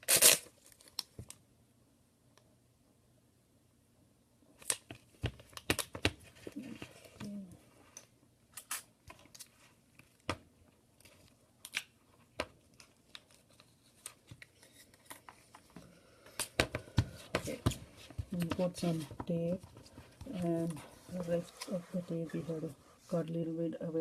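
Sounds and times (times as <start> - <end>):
tape being pulled and torn: 0.0 - 1.2, 8.5 - 10.3.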